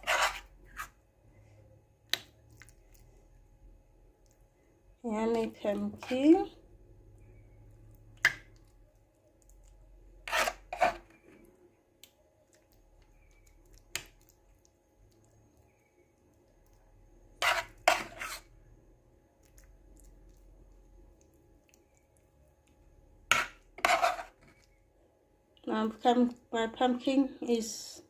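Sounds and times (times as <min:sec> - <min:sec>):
spoon scraping a plate: 0:00.0 - 0:01.0, 0:10.2 - 0:11.3, 0:17.4 - 0:18.5, 0:23.3 - 0:24.7.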